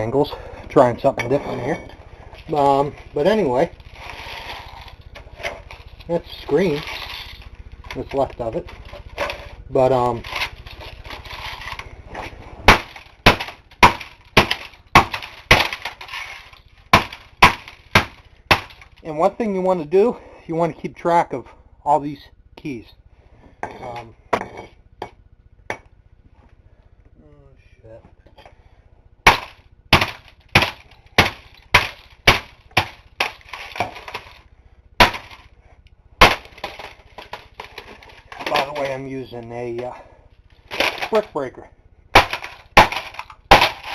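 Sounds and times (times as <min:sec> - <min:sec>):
broken pieces rattling: 0:01.6 - 0:12.0, 0:12.7 - 0:19.1, 0:29.3 - 0:35.5, 0:36.2 - 0:39.1, 0:40.6 - 0:41.4, 0:42.2 - 0:43.9
hammer smashing laptop: 0:12.6 - 0:18.8, 0:29.2 - 0:34.4, 0:35.0 - 0:35.4, 0:36.2 - 0:38.8, 0:40.7 - 0:41.3, 0:42.2 - 0:43.9
hammer striking plastic case: 0:29.3 - 0:34.4.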